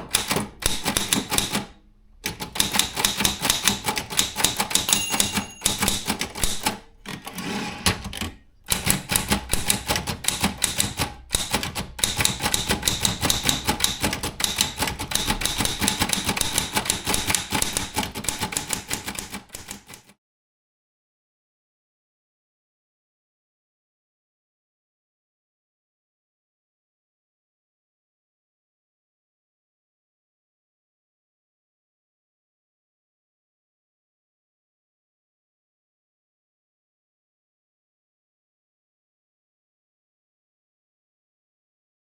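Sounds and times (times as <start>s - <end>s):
typewriter typing fast: 0.0s - 1.7s, 2.3s - 20.2s.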